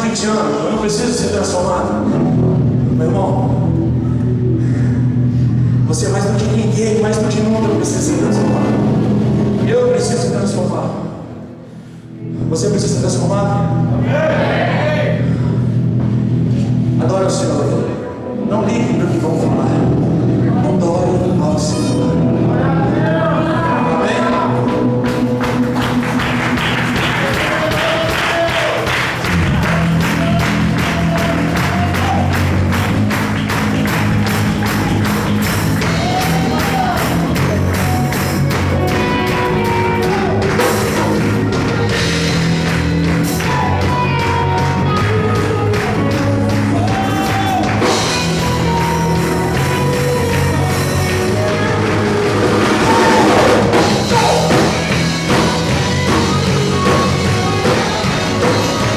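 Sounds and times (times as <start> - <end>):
bass line: 0.0 - 11.6, 12.2 - 58.9
live band playing: 23.6 - 58.9
steady drum beat: 24.4 - 58.9.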